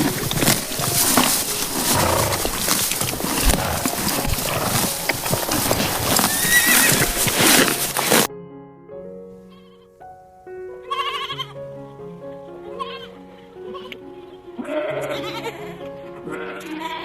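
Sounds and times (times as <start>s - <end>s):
animal calls: 0.0s - 8.3s.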